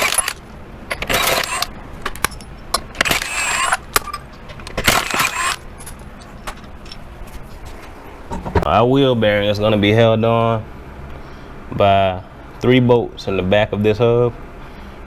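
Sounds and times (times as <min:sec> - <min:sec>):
impact wrench spinning: 0:00.0 - 0:06.0.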